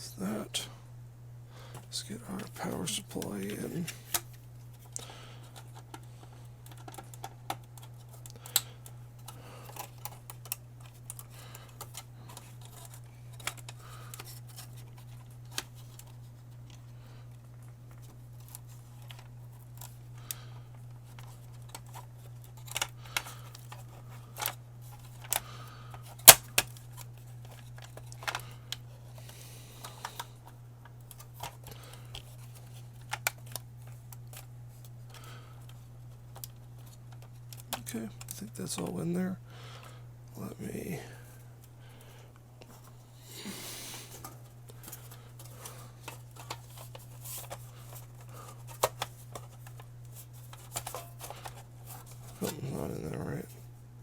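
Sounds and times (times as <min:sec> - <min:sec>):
steady low hum: 0:00.0 - 0:54.0
plastic parts clicking and knocking: 0:04.1 - 0:16.8, 0:20.8 - 0:28.8.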